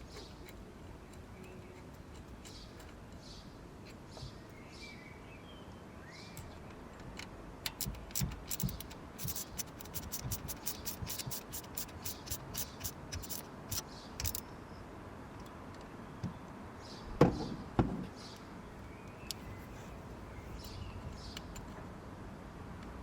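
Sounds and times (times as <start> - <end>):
low steady background noise: 0.0 - 23.0
quick sharp clicks: 7.7 - 14.4.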